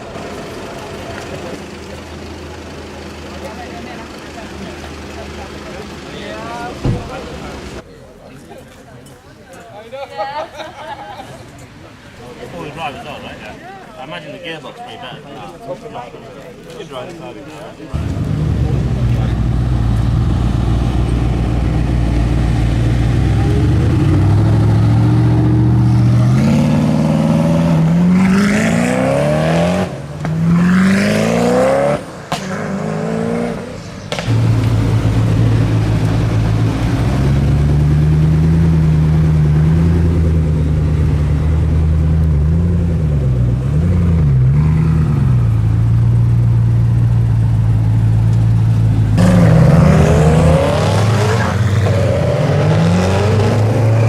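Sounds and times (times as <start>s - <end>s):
car engine revving: 18.0s - 54.0s.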